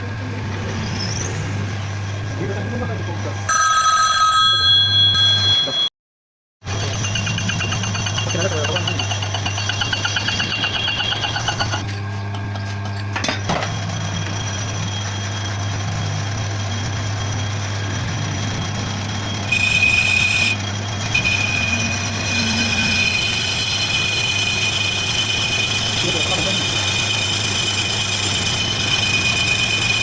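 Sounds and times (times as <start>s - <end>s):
lathe motor hum: 13.8s - 30.0s.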